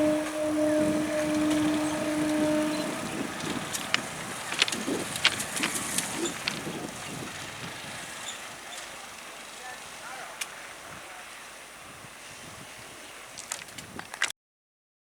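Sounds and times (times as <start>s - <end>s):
steady tone: 0.0s - 4.4s
train clicking and rattling: 0.0s - 11.8s
train running past: 0.0s - 13.4s.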